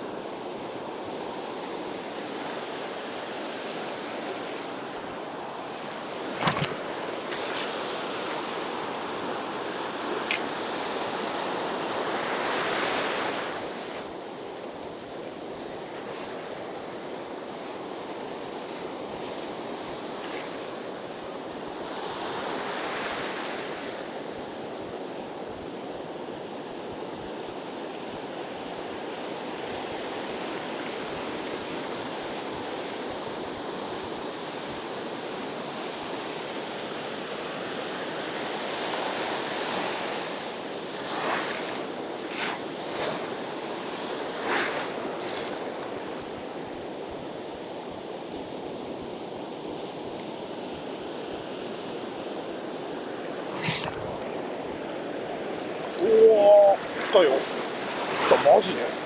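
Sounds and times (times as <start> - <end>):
surf breaking on a beach: 55.6 - 59.0.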